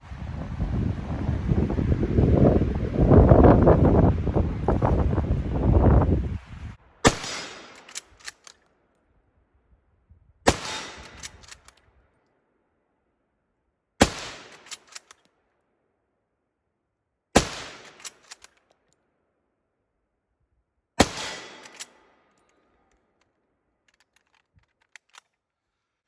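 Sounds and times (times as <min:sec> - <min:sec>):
rifle shots: 0:07.0 - 0:08.4, 0:10.5 - 0:11.7, 0:14.0 - 0:15.0, 0:17.4 - 0:18.4, 0:21.0 - 0:22.1.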